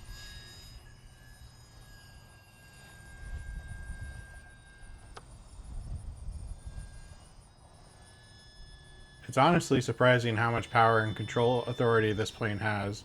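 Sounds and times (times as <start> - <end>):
model plane motor whine: 0.0 - 13.0
wind rumbling on microphone: 5.5 - 7.2.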